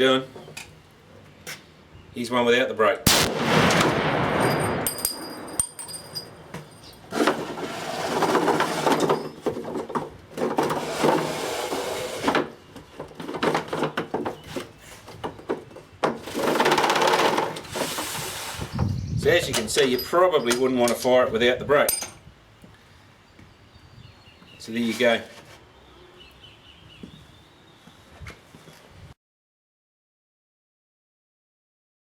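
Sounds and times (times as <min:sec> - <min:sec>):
rifle shot echoing: 0:03.1 - 0:05.5
rustling noise: 0:16.4 - 0:19.0, 0:24.6 - 0:25.7.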